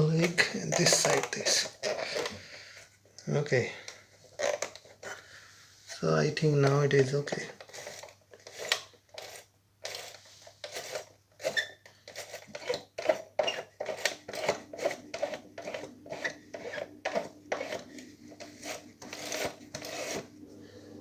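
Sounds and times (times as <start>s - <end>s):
plastic brush scraping and clicking: 0.0s - 3.2s, 3.8s - 5.2s, 5.9s - 20.4s.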